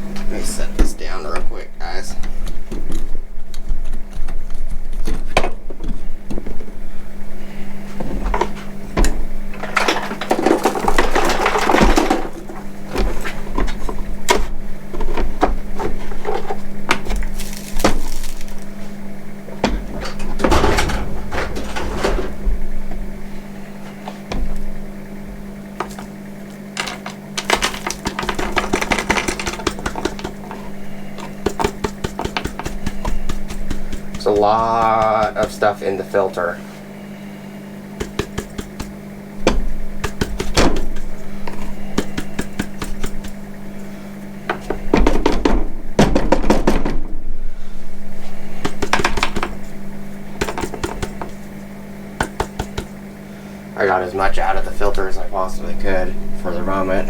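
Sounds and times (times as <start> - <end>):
steady low hum: 0.0 - 57.0
rustling and scraping: 7.4 - 24.8.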